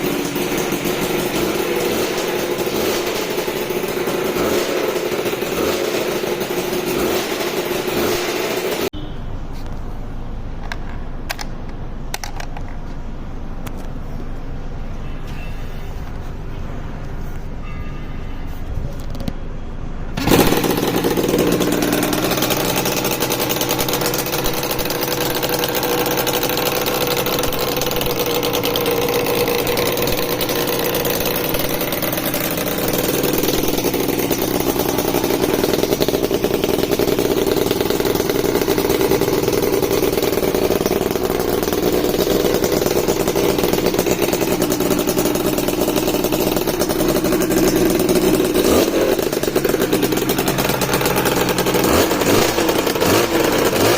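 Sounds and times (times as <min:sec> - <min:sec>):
two-stroke engine fast idle: 0:00.0 - 0:08.9, 0:20.2 - 0:53.9.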